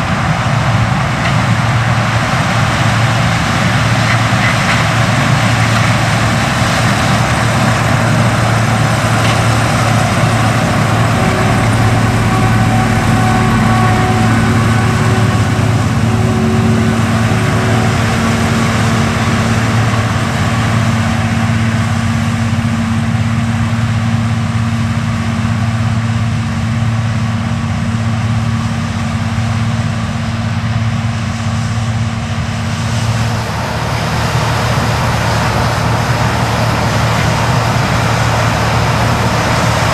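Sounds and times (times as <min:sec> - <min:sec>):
diesel engine drone: 0:00.0 - 0:39.9
machinery whine: 0:00.0 - 0:39.9.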